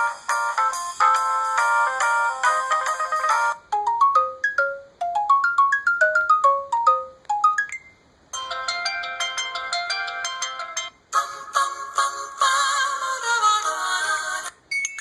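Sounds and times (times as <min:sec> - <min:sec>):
bell-like ringtone melody: 0:00.0 - 0:11.0, 0:14.7 - 0:15.0
chiming ringtone: 0:00.0 - 0:11.0, 0:14.7 - 0:15.0.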